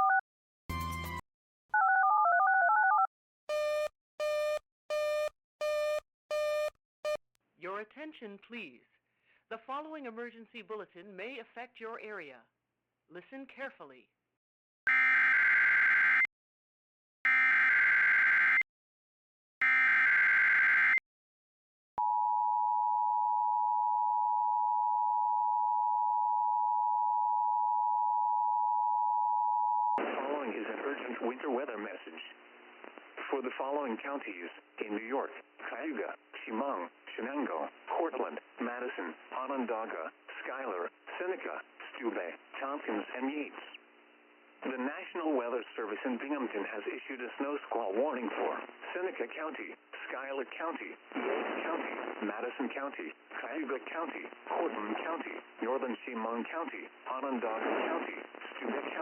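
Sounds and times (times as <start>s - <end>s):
touch-tone dialing tones: 0.0s - 0.2s
busy signal beeping: 22.0s - 30.0s.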